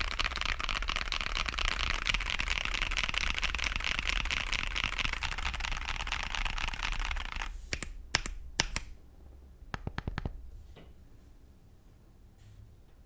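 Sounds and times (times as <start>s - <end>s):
mechanical keyboard typing: 0.0s - 9.0s, 9.8s - 10.4s.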